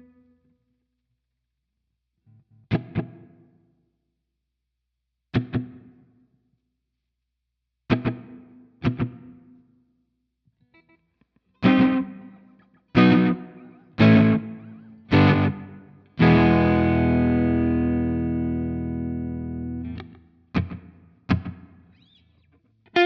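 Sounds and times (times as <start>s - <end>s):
electric guitar chords with delay: 11.6s - 12.4s, 13.0s - 20.0s.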